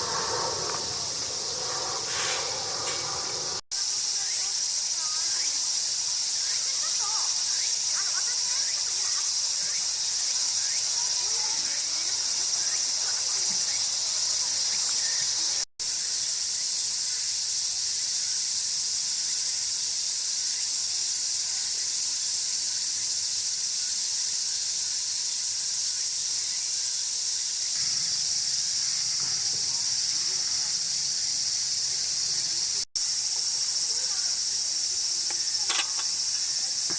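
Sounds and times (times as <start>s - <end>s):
insects shrilling: 0.0s - 36.9s.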